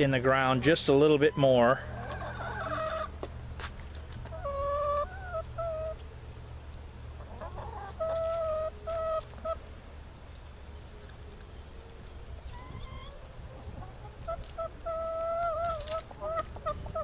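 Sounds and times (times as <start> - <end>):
low steady hum: 0.0 - 17.0
hens calling: 0.3 - 3.3, 4.2 - 6.1, 7.1 - 9.7, 12.3 - 17.0.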